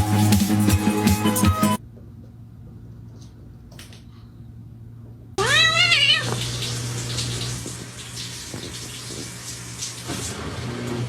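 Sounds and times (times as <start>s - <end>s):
cat meowing: 5.4s - 6.6s
steady hiss: 6.4s - 10.4s.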